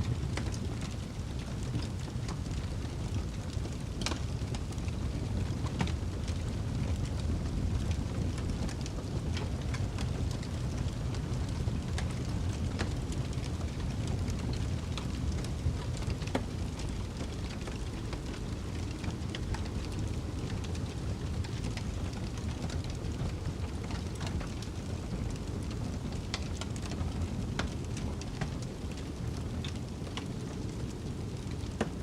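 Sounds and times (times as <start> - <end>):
log fire crackling and popping: 0.0 - 32.0
low rumble of storm wind: 0.0 - 32.0.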